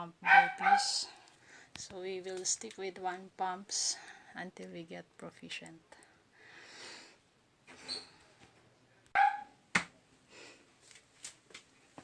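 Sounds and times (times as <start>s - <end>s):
dog bark: 0.2s - 1.0s, 9.2s - 9.6s.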